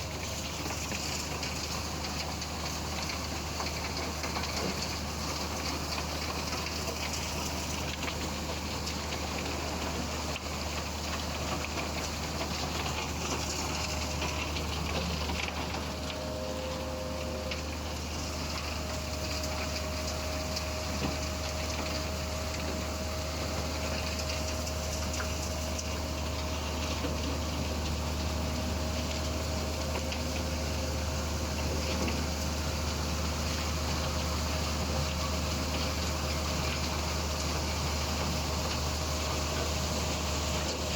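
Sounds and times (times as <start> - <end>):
steady whine: 9.8 - 40.9
machinery drone: 11.0 - 40.9.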